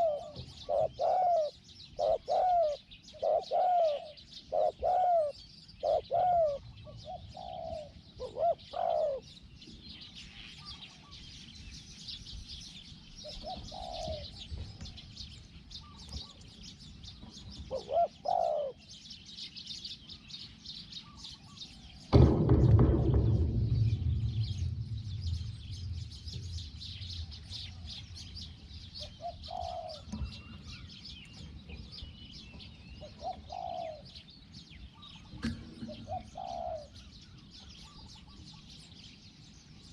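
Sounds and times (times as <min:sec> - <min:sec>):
doves cooing: 0:00.0 - 0:09.4, 0:13.2 - 0:15.1, 0:17.2 - 0:19.0, 0:25.4 - 0:34.3, 0:35.1 - 0:38.1
high chirping of small birds: 0:00.0 - 0:39.9
loud low rushing noise: 0:22.2 - 0:29.0.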